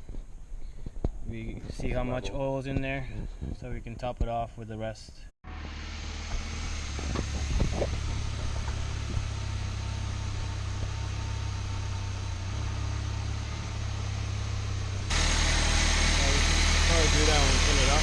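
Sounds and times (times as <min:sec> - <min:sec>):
car engine idling: 0:05.5 - 0:18.0.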